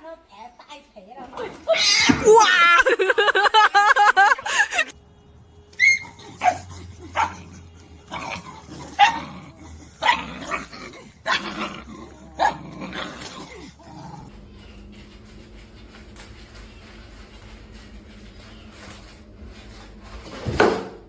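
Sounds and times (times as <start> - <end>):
dog barking: 5.8 - 9.3, 10.0 - 10.6.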